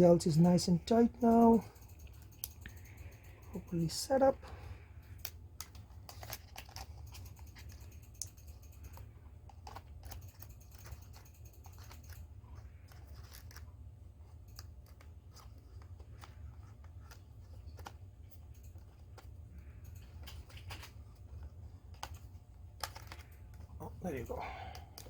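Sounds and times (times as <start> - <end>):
plastic parts clicking: 5.1 - 13.7, 14.4 - 25.0.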